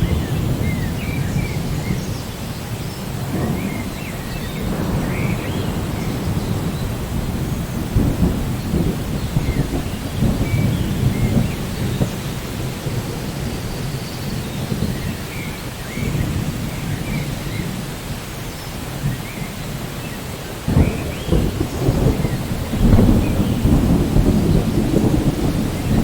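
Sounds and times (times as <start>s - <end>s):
rain falling: 0.0s - 26.0s
rolling thunder rumble: 0.0s - 26.0s.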